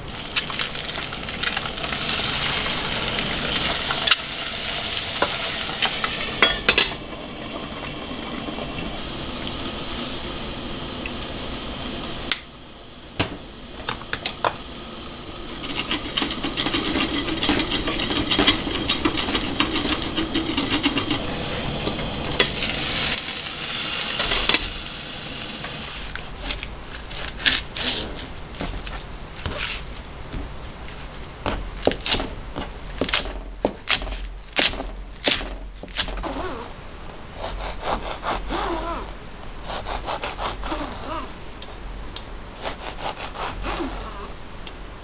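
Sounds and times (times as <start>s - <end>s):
food sizzling in a frying pan: 0.0s - 26.1s
utensil clicking and scraping: 15.6s - 21.2s.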